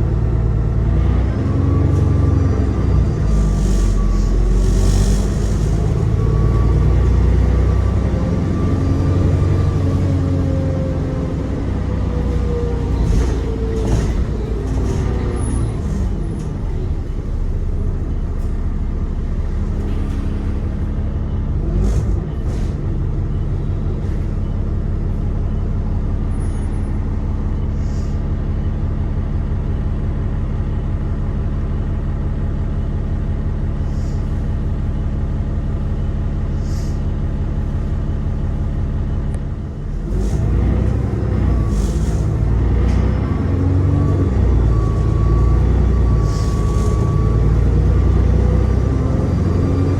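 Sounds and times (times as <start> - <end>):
bus engine whine and idle: 0.0 - 49.9
air brake hisses: 27.7 - 28.2, 33.8 - 34.4, 36.6 - 37.1, 46.2 - 47.1.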